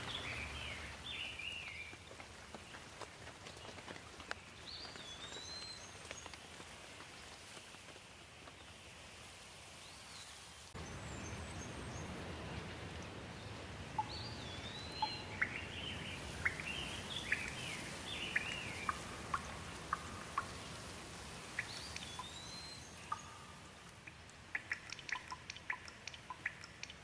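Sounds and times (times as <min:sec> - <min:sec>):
birds warbling: 0:00.0 - 0:01.9, 0:10.8 - 0:23.8
rain hiss: 0:00.0 - 0:27.0
water drips: 0:10.8 - 0:27.0.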